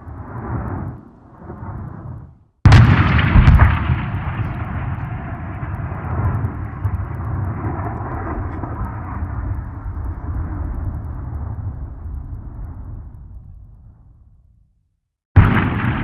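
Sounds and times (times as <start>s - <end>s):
cannon blast rumble: 2.6s - 14.4s, 15.4s - 16.0s.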